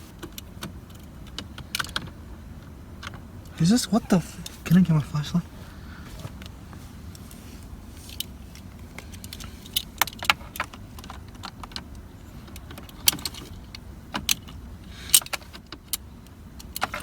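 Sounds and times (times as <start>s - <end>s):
low steady hum: 0.0s - 11.1s.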